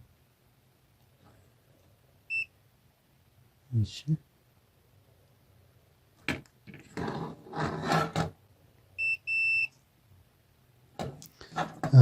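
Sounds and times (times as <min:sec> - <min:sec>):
multimeter continuity beeps: 0:02.3 - 0:02.6, 0:09.0 - 0:09.8.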